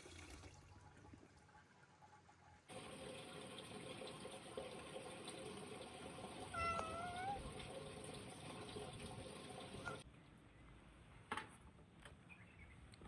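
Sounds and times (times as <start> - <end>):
cat meowing: 6.5 - 7.5.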